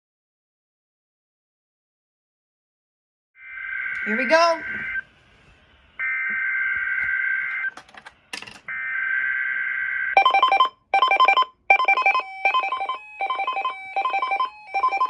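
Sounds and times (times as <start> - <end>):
pulsing electronic alert tone: 10.2 - 15.0.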